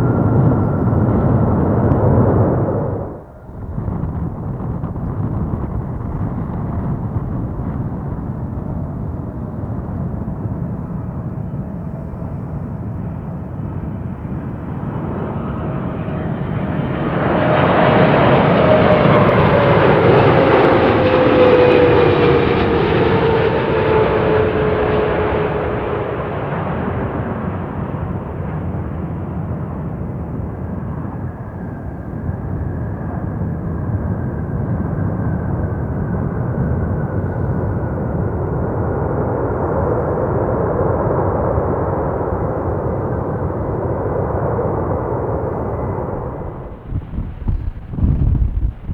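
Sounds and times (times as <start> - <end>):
jet airliner rumble: 0.0 - 48.9
jet engine whine: 0.0 - 48.9.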